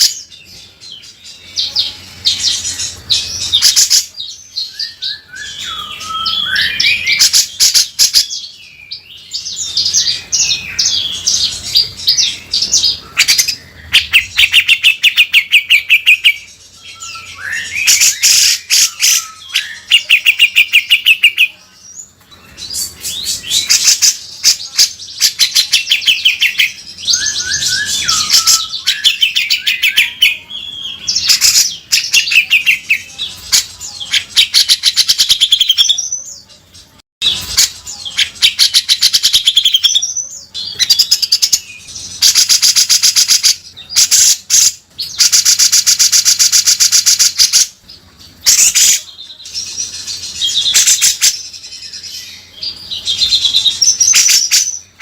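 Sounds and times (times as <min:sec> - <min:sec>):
bird singing rattling notes: 0:00.0 - 0:21.4.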